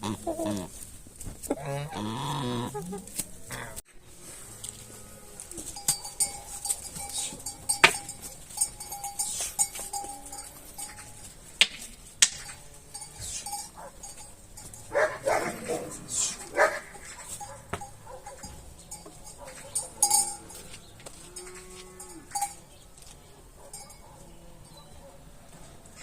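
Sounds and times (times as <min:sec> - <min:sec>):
sharp clicks and knocks: 0:11.6 - 0:12.6.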